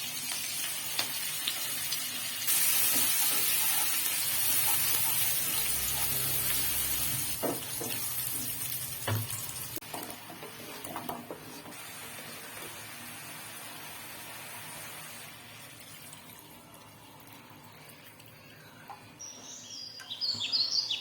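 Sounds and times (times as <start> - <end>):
food sizzling in hot oil: 0.0 - 16.1
spatula scraping pan: 9.9 - 11.8.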